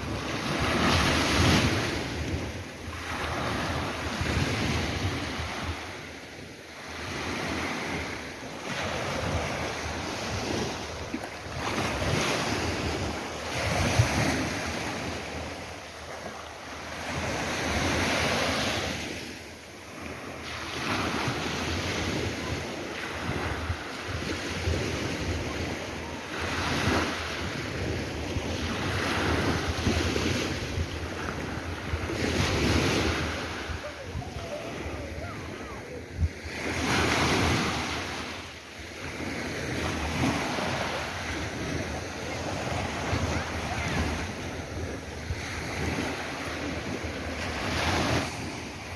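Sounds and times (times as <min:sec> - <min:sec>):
wind rumbling on microphone: 0:00.0 - 0:06.1, 0:21.0 - 0:38.3
sea waves breaking on shore: 0:00.0 - 0:48.9.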